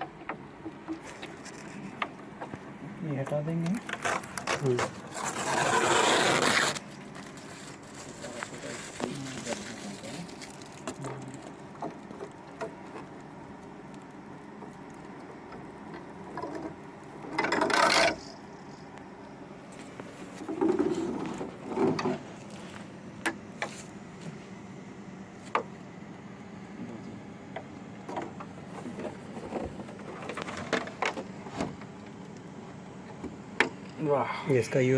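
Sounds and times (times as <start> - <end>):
packaging rustling: 3.8 - 12.1.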